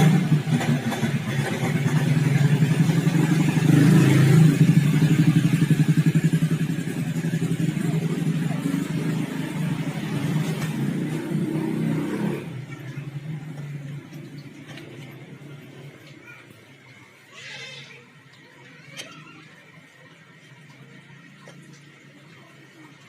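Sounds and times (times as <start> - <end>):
motorcycle engine running: 0.0 - 16.3.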